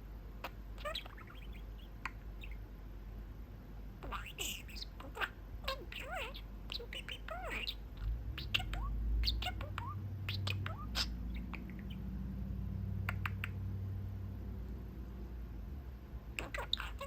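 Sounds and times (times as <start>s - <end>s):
low steady hum: 0.0s - 17.0s
budgie chirping: 0.4s - 2.7s, 4.0s - 12.2s, 12.9s - 13.8s, 16.3s - 17.0s.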